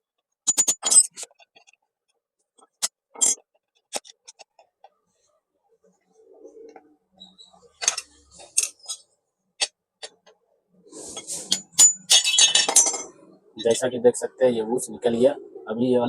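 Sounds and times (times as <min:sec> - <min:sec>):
screwdriver scrape: 0:11.0 - 0:12.4.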